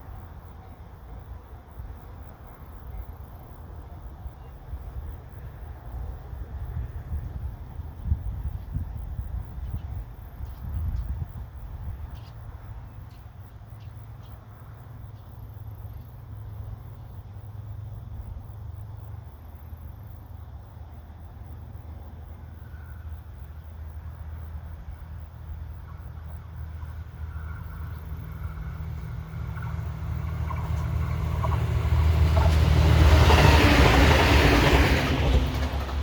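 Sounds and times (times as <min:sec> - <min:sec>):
faint approaching train: 0:00.0 - 0:36.0
wind buffeting microphone: 0:06.6 - 0:12.2.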